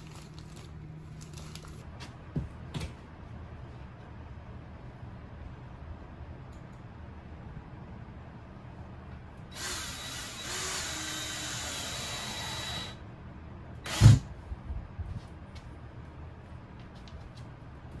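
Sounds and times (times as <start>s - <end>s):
power drill whining: 9.5s - 13.0s, 13.9s - 14.3s.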